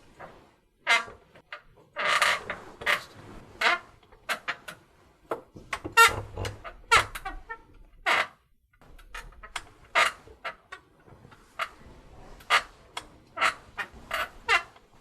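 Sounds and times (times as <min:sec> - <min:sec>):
bed springs squeaking: 0:05.8 - 0:14.9.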